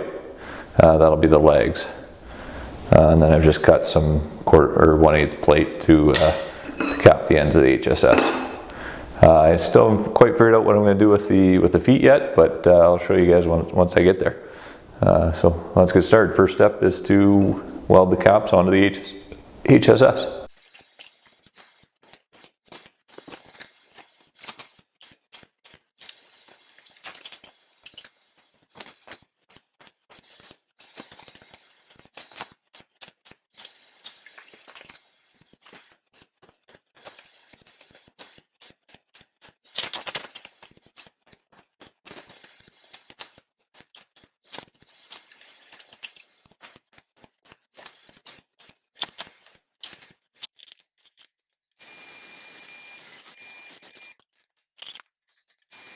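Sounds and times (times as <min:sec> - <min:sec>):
welding arc crackling: 0:20.4 - 0:32.9, 0:33.6 - 0:50.4.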